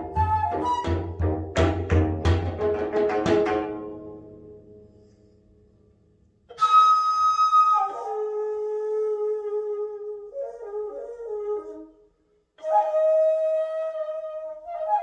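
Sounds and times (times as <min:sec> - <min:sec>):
bamboo flute held notes: 0:00.0 - 0:01.8, 0:06.5 - 0:15.0
plucked zither notes: 0:00.0 - 0:05.0.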